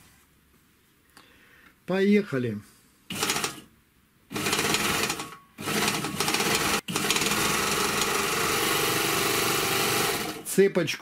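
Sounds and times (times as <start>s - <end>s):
overlocker sewing machine chatter: 3.1s - 3.6s, 4.3s - 10.5s.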